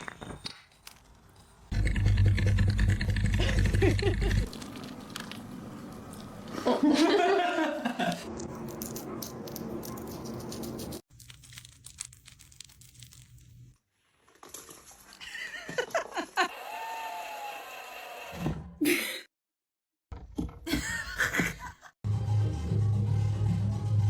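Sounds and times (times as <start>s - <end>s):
fast crinkling clicks: 4.5s - 6.3s.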